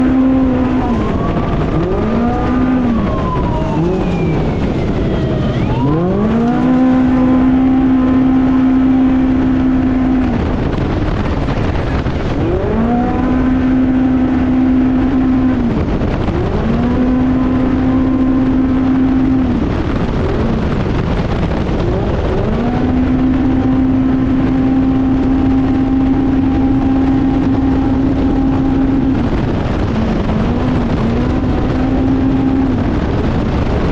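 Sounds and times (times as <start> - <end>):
race vehicle engine revving: 0.0 - 33.9
rough rumble and rattle: 0.0 - 33.9.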